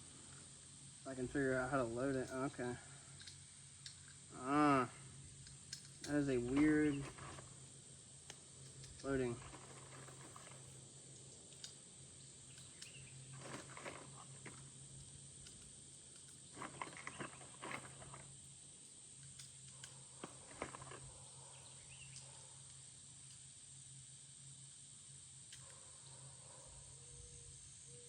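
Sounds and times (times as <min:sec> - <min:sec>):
low hum and hiss: 0:00.0 - 0:28.0
cartridges clicking into magazine: 0:05.4 - 0:06.2.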